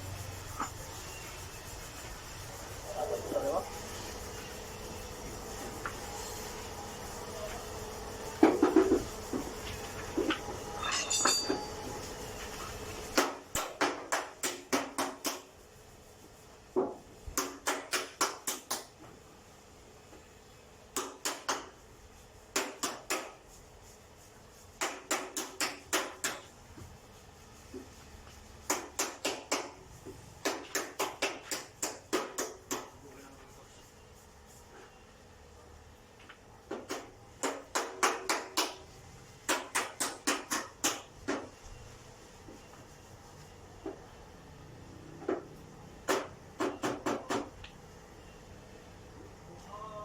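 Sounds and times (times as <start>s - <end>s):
steady background noise: 0.0s - 50.0s
hammer on sheet metal: 22.5s - 23.4s, 24.8s - 26.5s, 30.4s - 33.0s.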